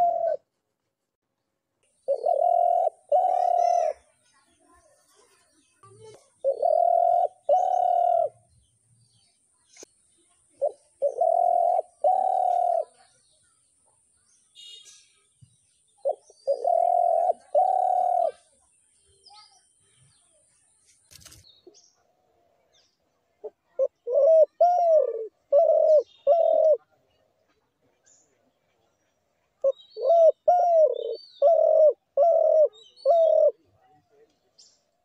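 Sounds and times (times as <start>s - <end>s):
dove cooing: 0.0s - 0.4s, 2.0s - 4.0s, 6.4s - 8.4s, 10.6s - 13.0s, 16.0s - 18.5s, 23.4s - 26.8s, 29.6s - 33.7s
small birds chirping: 0.0s - 35.0s.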